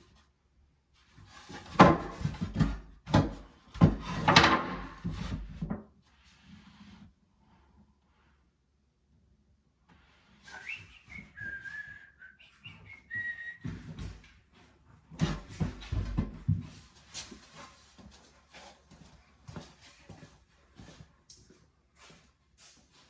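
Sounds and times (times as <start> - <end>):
high thin whistle-like tones: 10.4 - 13.7.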